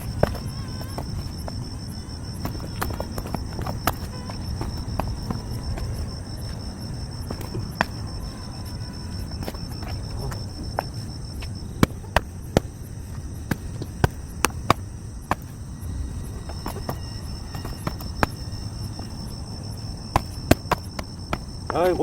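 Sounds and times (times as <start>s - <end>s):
crickets trilling: 0.0s - 22.0s.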